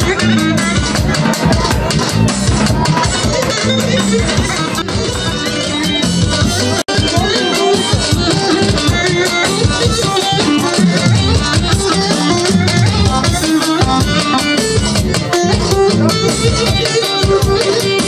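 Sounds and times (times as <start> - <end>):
rattling percussion: 0.0 - 5.1
instrumental music with drums: 0.0 - 18.0.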